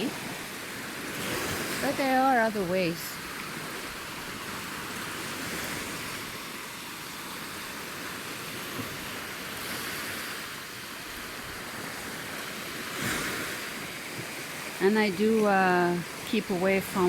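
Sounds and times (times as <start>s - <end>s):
sea waves washing onto shore: 0.0s - 17.0s.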